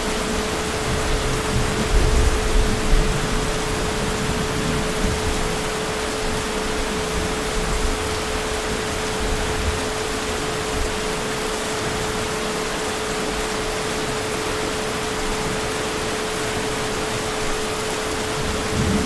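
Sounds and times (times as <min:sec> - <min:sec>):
heavy rain: 0:00.0 - 0:19.0
distant thunder rumble: 0:18.3 - 0:19.0.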